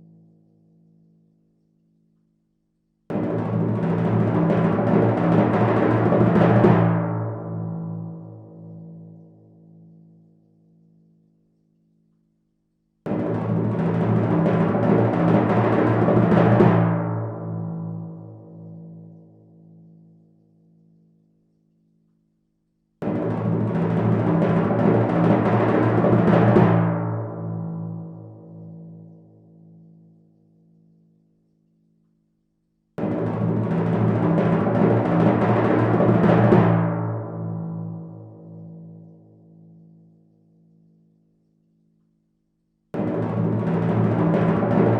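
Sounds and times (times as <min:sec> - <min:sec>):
timpani roll: 0:23.0 - 0:27.4, 0:33.0 - 0:37.6, 0:43.0 - 0:44.9.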